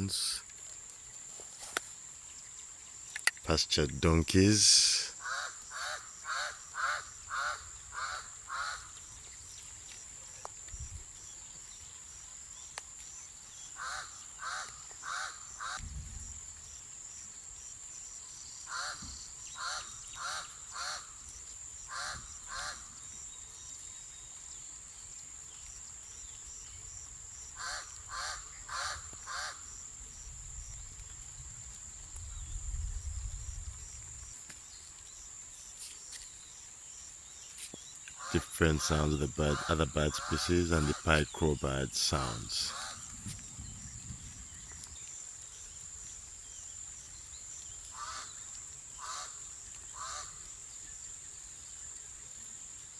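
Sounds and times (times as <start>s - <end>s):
crow cawing: 5.3s - 8.9s.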